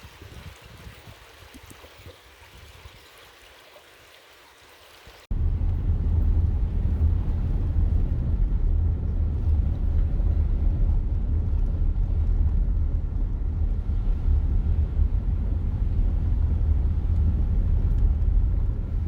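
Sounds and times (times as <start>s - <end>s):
wind buffeting microphone: 0.0s - 3.1s, 5.3s - 19.0s.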